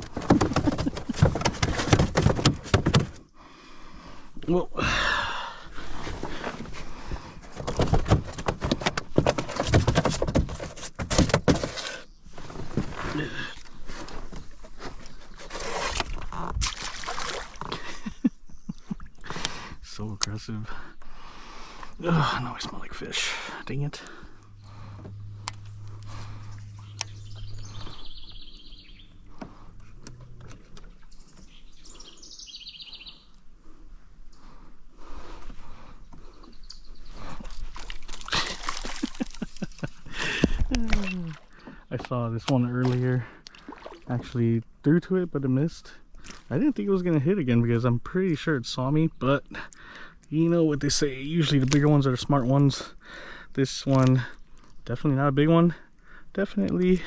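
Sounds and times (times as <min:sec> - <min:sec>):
fish thrashing and slapping: 0:00.0 - 0:03.2, 0:05.8 - 0:12.0, 0:12.7 - 0:17.9, 0:37.2 - 0:41.6, 0:42.8 - 0:44.2
low steady hum: 0:19.9 - 0:31.3
songbird trilling: 0:26.5 - 0:29.3, 0:31.1 - 0:33.3.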